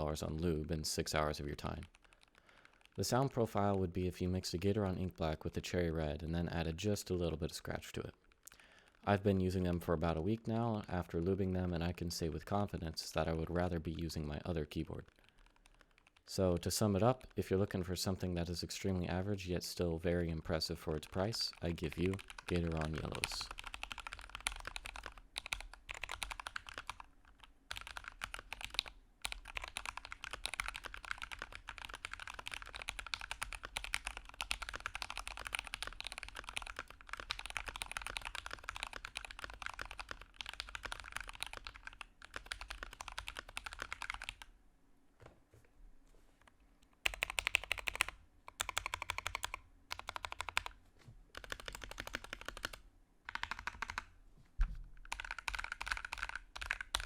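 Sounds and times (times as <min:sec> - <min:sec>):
mechanical keyboard typing: 0:01.5 - 0:03.3, 0:21.0 - 0:44.5, 0:47.0 - 0:54.1, 0:55.0 - 0:57.0.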